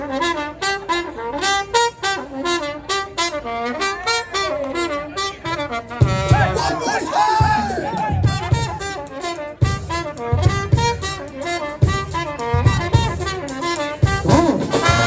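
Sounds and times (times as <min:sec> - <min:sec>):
brass band playing: 0:00.0 - 0:15.0
low drum beats: 0:06.0 - 0:09.0, 0:09.6 - 0:15.0.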